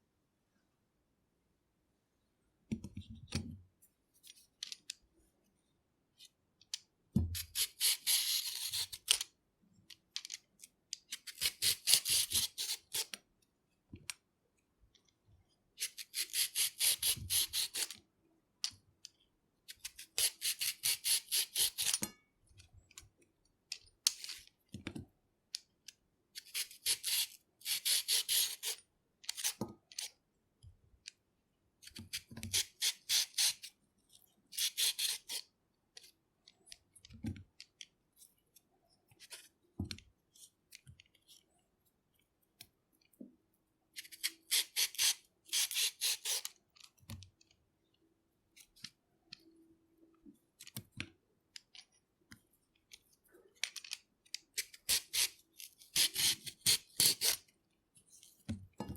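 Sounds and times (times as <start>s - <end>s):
peeler scraping a carrot: 7.4s - 9.1s, 15.8s - 18.0s, 19.8s - 22.0s, 26.4s - 30.1s, 31.8s - 33.7s, 34.5s - 35.5s, 44.0s - 46.5s, 54.6s - 57.4s.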